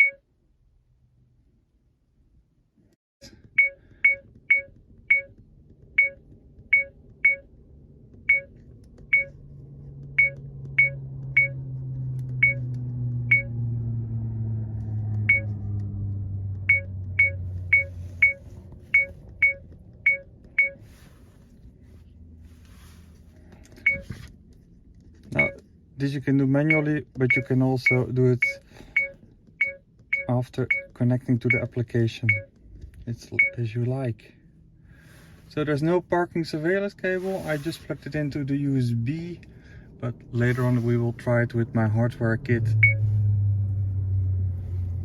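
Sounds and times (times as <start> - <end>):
short electronic beeps: 0.0 - 0.2, 3.6 - 5.3, 6.0 - 7.5, 8.3 - 8.5, 9.1 - 9.3, 10.2 - 11.6, 12.4 - 12.7, 13.3 - 13.5, 15.3 - 15.5, 16.7 - 20.8, 23.8 - 24.1, 25.4 - 25.6, 26.7 - 32.5, 33.4 - 33.6, 42.8 - 43.1
low hum: 3.2 - 33.8, 37.7 - 45.0.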